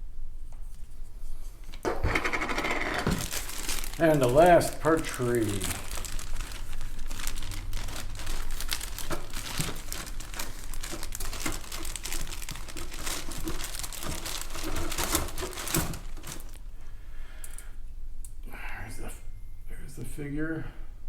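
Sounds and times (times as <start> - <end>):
plastic bags crinkling: 2.2 - 16.7.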